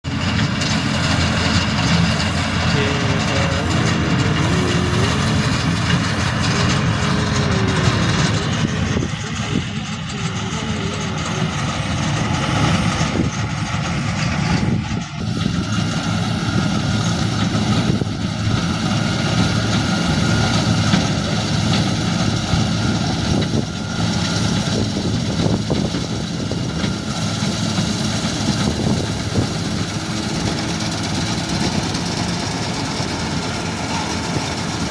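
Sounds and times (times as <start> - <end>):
continuous mechanical noise: 0.0 - 34.9
tractor engine running: 0.0 - 34.9.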